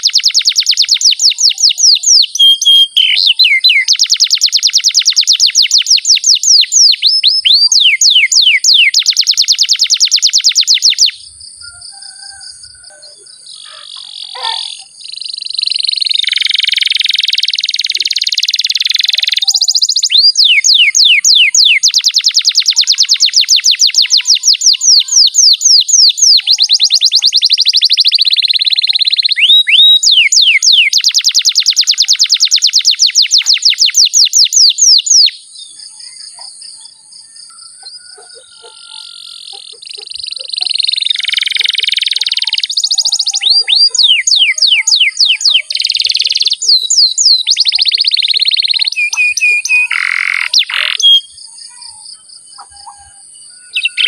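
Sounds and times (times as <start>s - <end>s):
canary singing trills: 0.0s - 54.0s.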